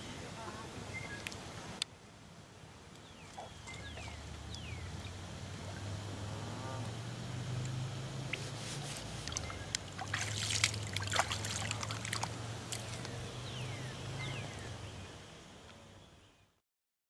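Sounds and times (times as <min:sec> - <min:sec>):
low steady hum: 0:00.0 - 0:16.6
water splashing and trickling: 0:03.2 - 0:15.3.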